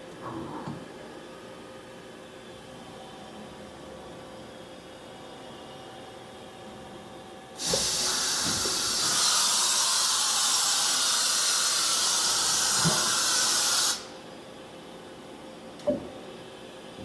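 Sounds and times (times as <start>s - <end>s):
compressed air hissing: 7.6s - 14.1s.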